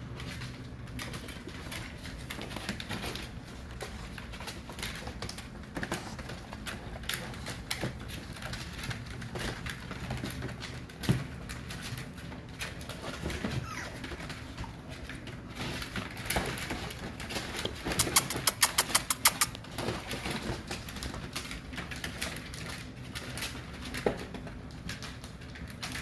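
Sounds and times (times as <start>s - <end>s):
puppies whimpering: 13.4s - 14.2s.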